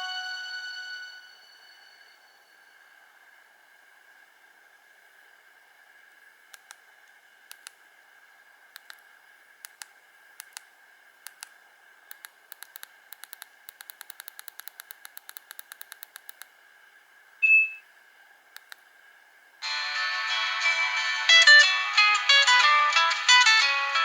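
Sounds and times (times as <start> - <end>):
phone keys clicking: 9.7 - 10.6, 12.1 - 16.5
loud high beep: 17.4 - 17.8.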